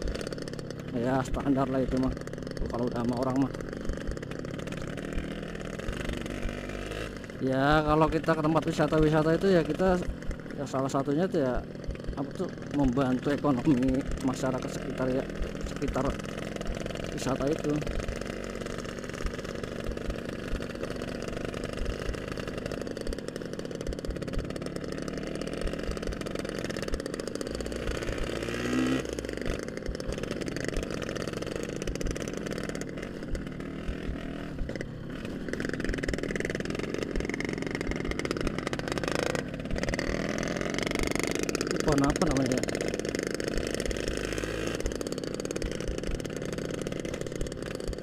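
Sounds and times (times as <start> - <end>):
motorcycle engine running: 0.0 - 48.0.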